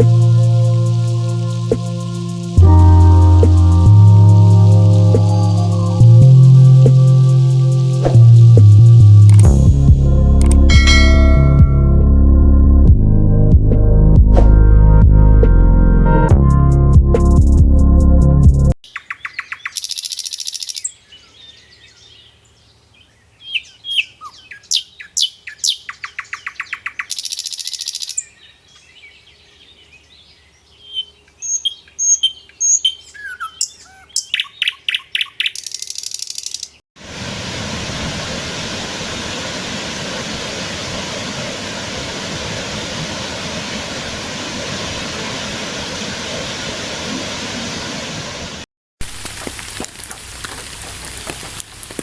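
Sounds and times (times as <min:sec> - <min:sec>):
steady rushing noise: 0:00.0 - 0:02.7
songbirds chirping and singing: 0:18.9 - 0:36.8.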